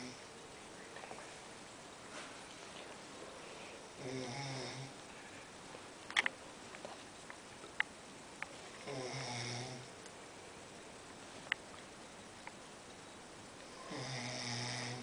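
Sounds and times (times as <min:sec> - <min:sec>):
person snoring: 0:04.0 - 0:04.9, 0:08.8 - 0:09.9, 0:13.7 - 0:15.0.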